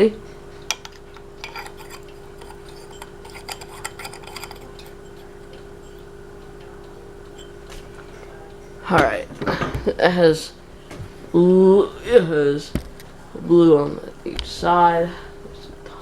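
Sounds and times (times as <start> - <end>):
steady hum: 0.0 - 16.0
light bulb scraping and clicking: 0.6 - 6.1.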